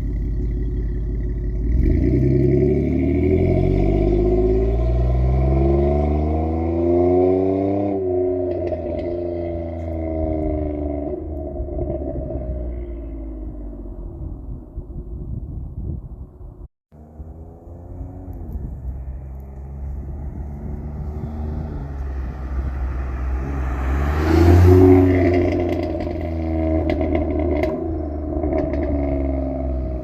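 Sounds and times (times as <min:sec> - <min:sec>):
engine exhaust rumble: 0:00.0 - 0:30.0
exhaust pops and crackles: 0:26.8 - 0:29.1.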